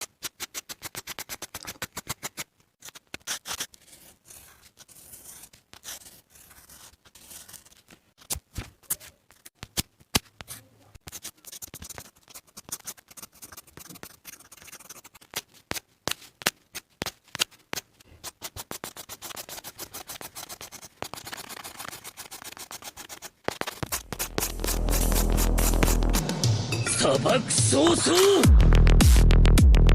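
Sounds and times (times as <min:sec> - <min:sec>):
pencil scratching on paper: 0:00.0 - 0:07.9, 0:10.4 - 0:26.3.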